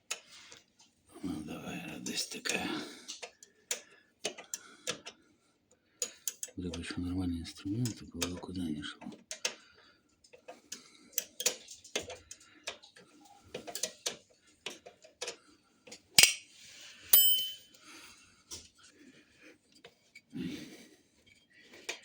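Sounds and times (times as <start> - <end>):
bright metallic clink: 17.1 - 17.8.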